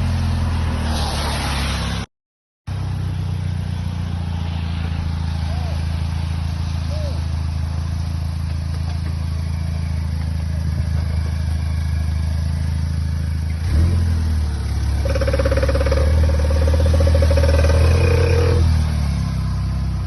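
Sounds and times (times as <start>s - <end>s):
car engine idling: 2.7s - 20.0s
whirring creaking knocking from front: 15.0s - 18.6s.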